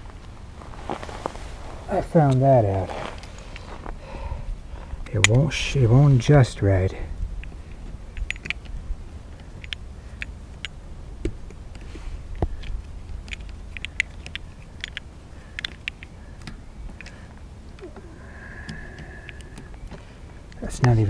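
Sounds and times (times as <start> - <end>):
low steady rumble: 0.0 - 21.0
clicks and taps on bicycle derailleur: 9.4 - 11.4, 12.4 - 17.2.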